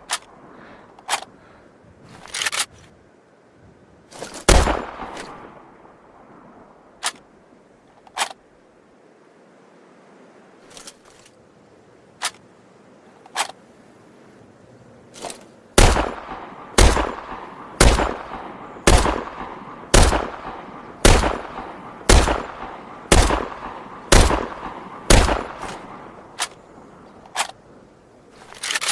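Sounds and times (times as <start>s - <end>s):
rifle shots with ringing echo: 4.5s - 5.4s, 15.8s - 26.3s
rifle action clicks: 27.2s - 27.6s, 28.4s - 28.9s.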